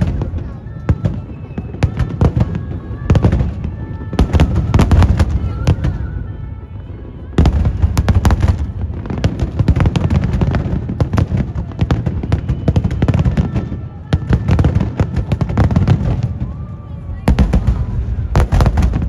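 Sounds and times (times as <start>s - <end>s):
deep rumbling booms: 17.2s - 19.0s
firework shell bursts and crackle: 17.3s - 19.0s.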